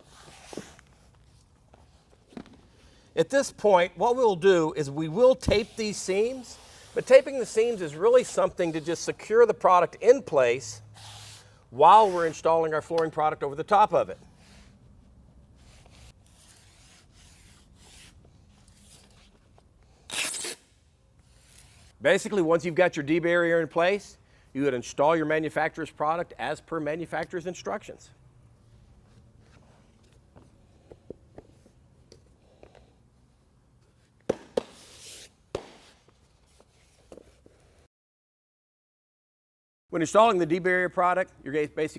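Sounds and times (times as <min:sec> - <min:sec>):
rustling and rubbing material: 0:05.2 - 0:09.2
tape ripping: 0:20.1 - 0:20.8.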